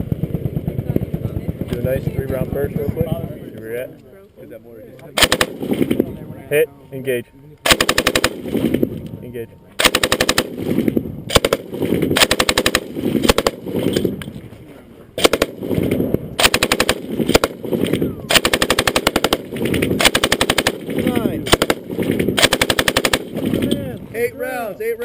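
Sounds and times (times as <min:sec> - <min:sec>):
machine gun firing bursts: 0:05.2 - 0:06.0, 0:07.6 - 0:08.9, 0:09.8 - 0:14.2, 0:15.2 - 0:23.7.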